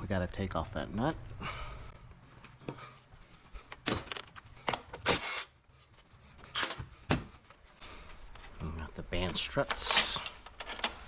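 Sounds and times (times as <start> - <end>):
metal tools clicking and clattering: 9.6 - 11.0.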